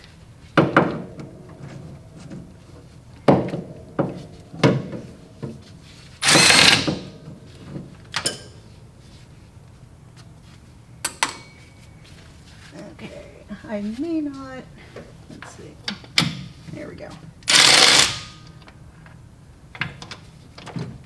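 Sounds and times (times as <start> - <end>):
metal tools clanking: 1.4 - 8.7.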